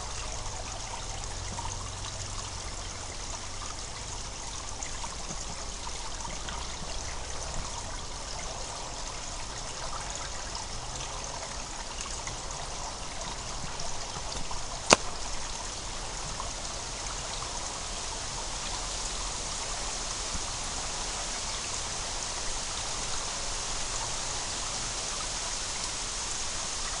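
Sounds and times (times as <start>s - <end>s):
water trickling and gurgling: 0.0s - 27.0s
sharp click: 14.9s - 15.1s.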